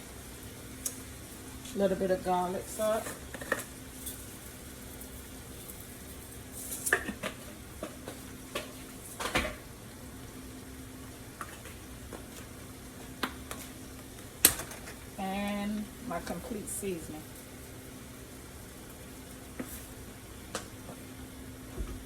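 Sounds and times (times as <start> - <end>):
sausage sizzling in a frying pan: 0.0 - 21.8
clatters against the pan: 3.0 - 4.2.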